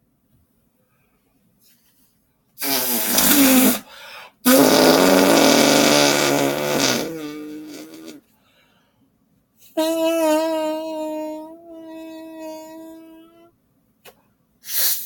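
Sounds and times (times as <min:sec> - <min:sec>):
person making fake fart noises: 0:02.6 - 0:08.2, 0:09.8 - 0:13.5.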